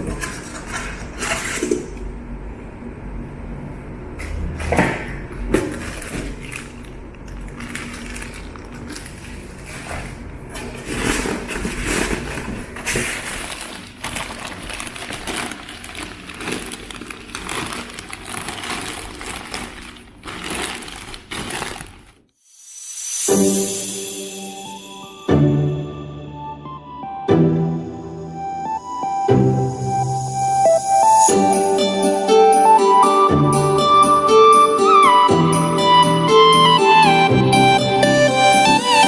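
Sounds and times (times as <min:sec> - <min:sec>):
packaging rustling and scraping: 0:00.0 - 0:01.9, 0:05.4 - 0:22.3.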